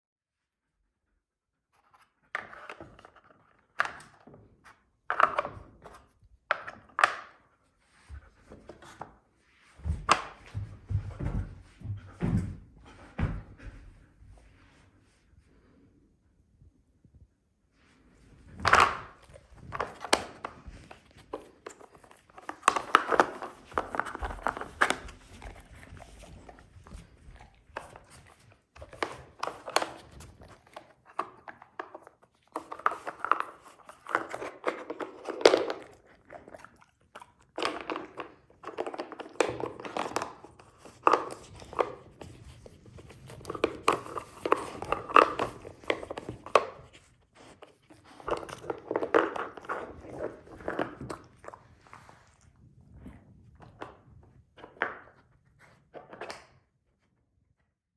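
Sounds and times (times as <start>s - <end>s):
dog crunching treats: 18.5s - 56.7s.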